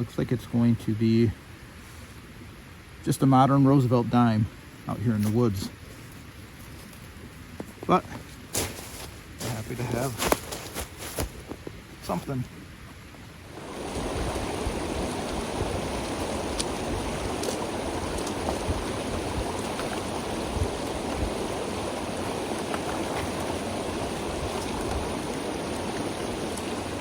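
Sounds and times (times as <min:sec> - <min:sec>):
stream water over rocks: 0:13.4 - 0:27.0.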